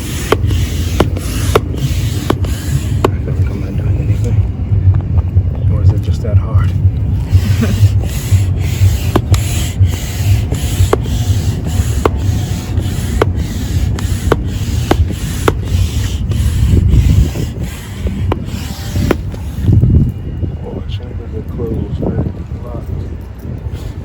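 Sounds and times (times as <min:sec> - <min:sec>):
hand air pump strokes: 0:00.0 - 0:04.3, 0:07.2 - 0:20.2, 0:23.6 - 0:24.0.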